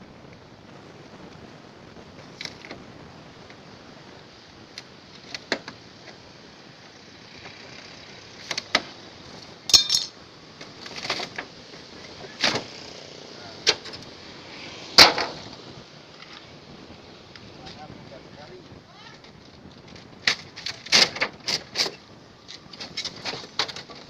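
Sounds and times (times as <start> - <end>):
tools striking metal: 9.7 - 10.1.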